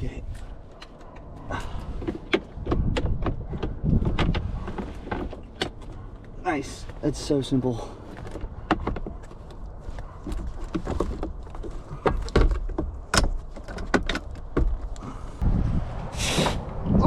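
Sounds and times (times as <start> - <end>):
steady low rumble: 14.9 - 17.0.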